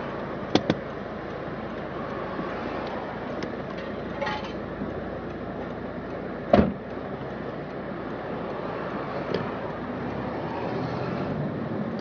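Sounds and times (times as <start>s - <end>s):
street traffic noise: 0.0s - 12.0s
loud thump: 6.5s - 6.8s.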